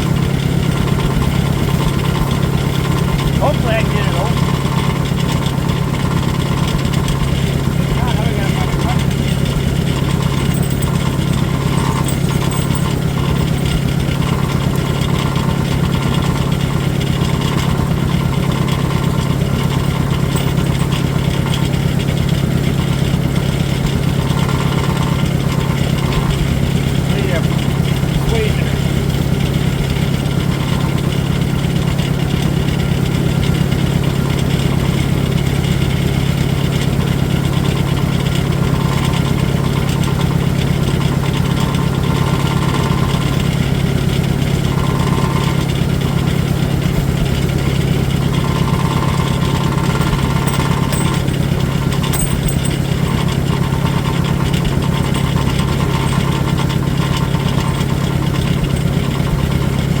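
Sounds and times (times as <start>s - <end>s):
tractor engine idling: 0.0s - 60.0s.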